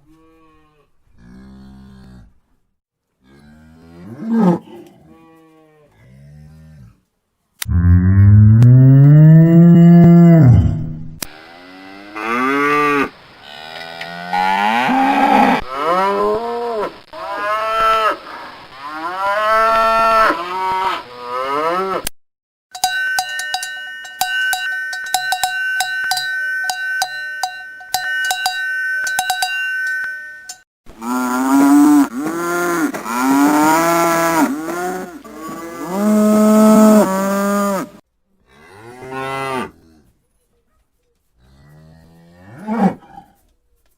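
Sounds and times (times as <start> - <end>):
cows mooing: 7.7 - 11.0, 11.6 - 18.0, 31.0 - 39.8
cowbells clanking: 22.7 - 30.6.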